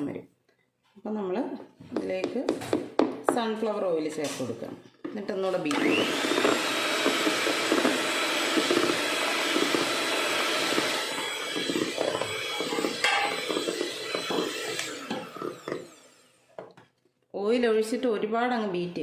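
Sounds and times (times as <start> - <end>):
electric mixer motor whine: 5.7 - 16.7
beaters knocking in bowl: 10.6 - 15.9.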